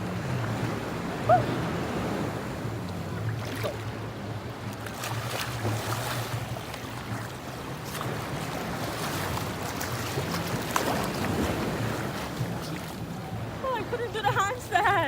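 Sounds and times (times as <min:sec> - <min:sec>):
waves washing on shore: 0:00.0 - 0:15.0
wind rumbling on microphone: 0:00.0 - 0:15.0.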